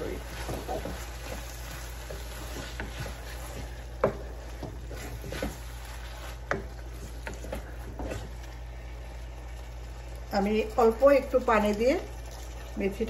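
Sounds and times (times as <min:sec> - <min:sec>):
spatula scraping in a pot: 0:00.0 - 0:08.9.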